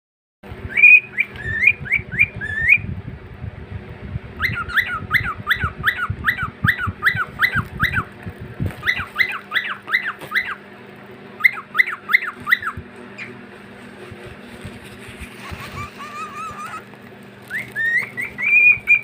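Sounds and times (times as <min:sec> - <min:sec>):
cockatiel whistling: 0:00.7 - 0:02.8, 0:04.4 - 0:08.1, 0:08.8 - 0:10.6, 0:11.4 - 0:13.4, 0:15.4 - 0:19.0.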